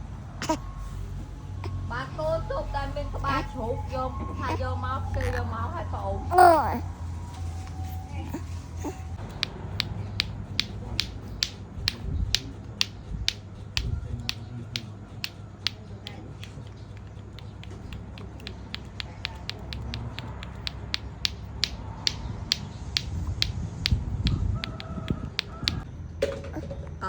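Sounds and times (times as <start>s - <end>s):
sharp clicks: 9.2s - 25.9s.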